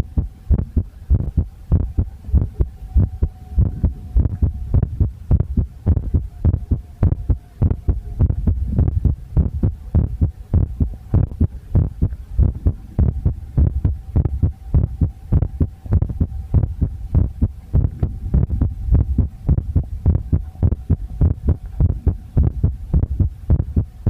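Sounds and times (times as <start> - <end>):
heartbeat thumps: 0.0 - 24.0
faint high tone: 1.8 - 8.8.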